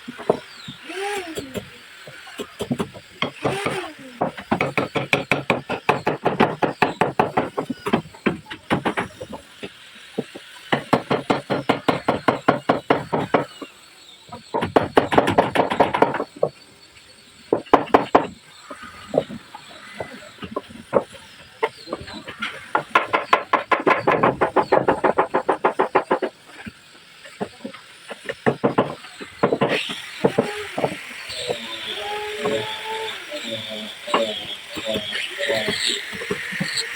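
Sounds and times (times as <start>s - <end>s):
rapid knocking on wood: 0.1s - 0.5s, 2.0s - 13.5s, 14.3s - 16.6s, 17.5s - 18.4s, 19.1s - 26.8s, 27.4s - 31.6s.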